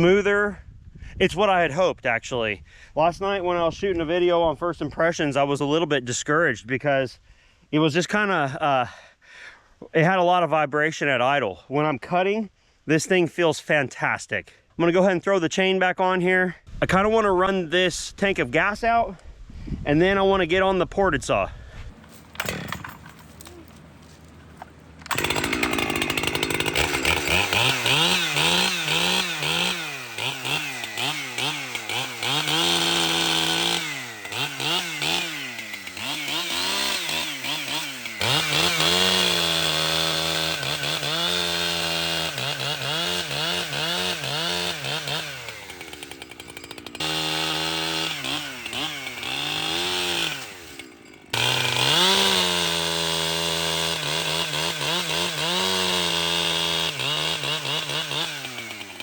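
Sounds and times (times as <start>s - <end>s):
chainsaw cutting wood: 22.0s - 59.0s.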